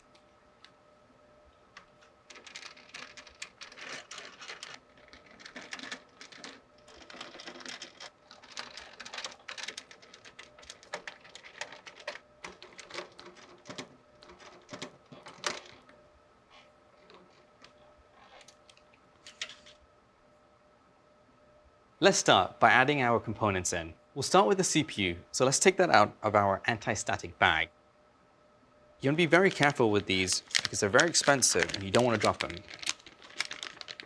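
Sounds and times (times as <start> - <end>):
computer parts clicking and tapping: 1.7 - 15.8, 29.6 - 34.0.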